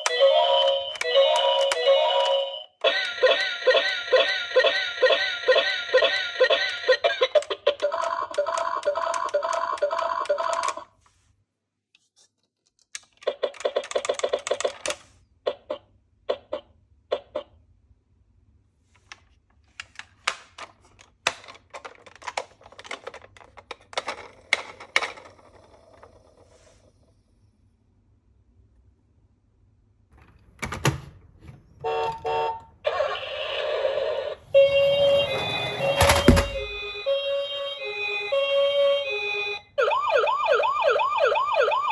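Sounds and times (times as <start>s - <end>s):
toy clicks: 0.0s - 10.9s, 13.0s - 15.0s
toy siren: 0.0s - 10.9s, 31.8s - 41.9s
harsh electronic tone: 32.9s - 38.4s
short horn-like beeps: 34.5s - 37.8s.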